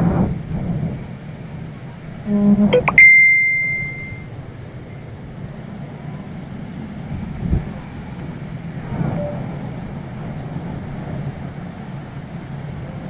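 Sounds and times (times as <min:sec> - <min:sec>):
rising chime with bell ding: 0:02.7 - 0:04.3.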